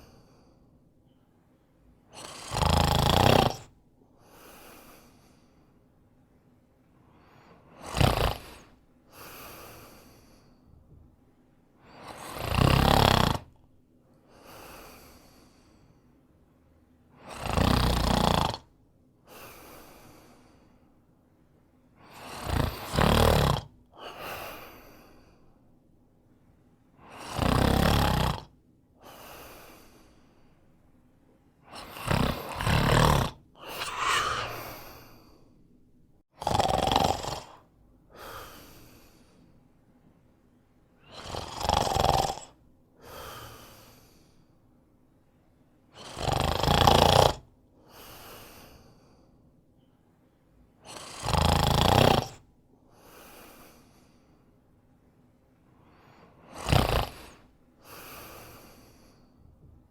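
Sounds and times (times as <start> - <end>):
soft breath: 0.0 - 2.3, 4.1 - 12.3, 14.1 - 17.2, 19.2 - 22.9, 24.0 - 27.4, 29.0 - 36.2, 37.5 - 41.2, 43.0 - 45.5, 47.8 - 50.5, 52.8 - 59.9
man snoring: 2.2 - 3.7, 7.6 - 10.4, 11.9 - 13.6, 17.2 - 18.7, 22.1 - 25.3, 27.0 - 29.9, 31.7 - 35.4, 36.3 - 39.1, 41.0 - 44.2, 46.0 - 48.5, 50.8 - 52.4, 56.4 - 59.2.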